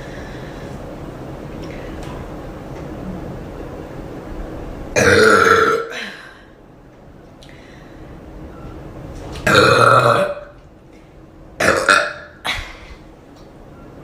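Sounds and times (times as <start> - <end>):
woman burping loudly: 5.0 - 6.2, 9.4 - 10.5, 11.6 - 12.7.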